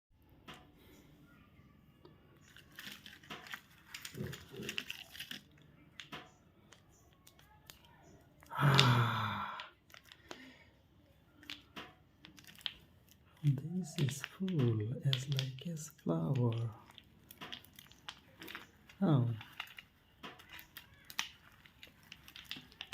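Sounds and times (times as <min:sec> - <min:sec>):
wrapper crinkling: 0:02.4 - 0:06.0, 0:09.8 - 0:10.6, 0:11.4 - 0:22.9
vocal sound: 0:08.5 - 0:09.7.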